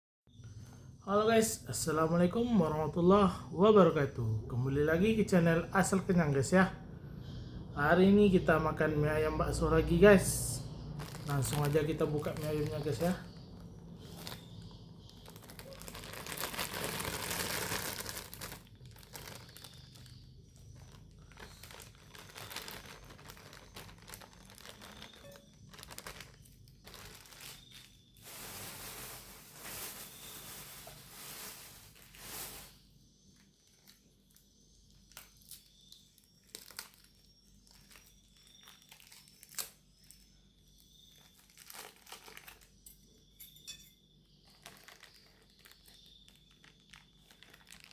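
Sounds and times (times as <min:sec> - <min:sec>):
food packaging crinkling and tearing: 0:10.8 - 0:32.8, 0:33.6 - 0:43.0, 0:44.4 - 0:47.9.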